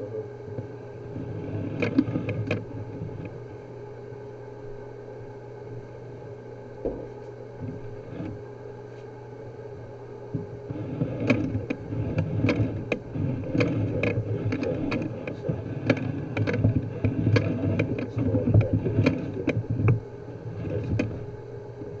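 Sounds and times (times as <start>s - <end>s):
rattling mechanical rumble: 0.0s - 8.6s, 9.8s - 22.0s
sharp clicks and knocks: 1.7s - 3.4s, 10.3s - 21.3s.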